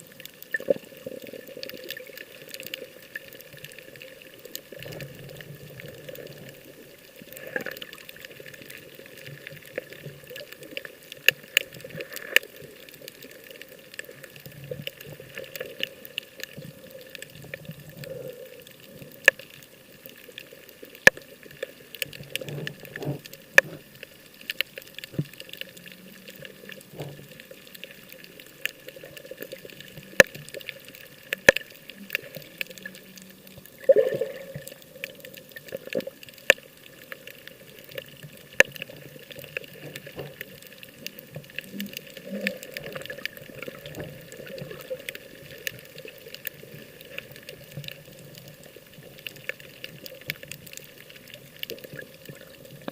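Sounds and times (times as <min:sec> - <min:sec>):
water sloshing and splashing: 0:20.2 - 0:52.9.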